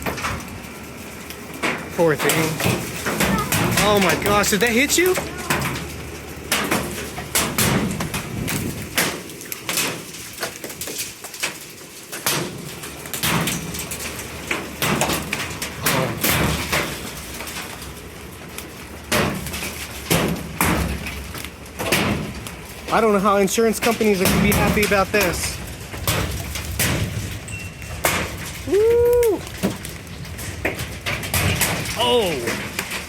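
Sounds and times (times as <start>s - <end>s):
hailstones banging on metal: 0.0s - 33.0s
hiss of falling hail and rain: 0.0s - 33.0s.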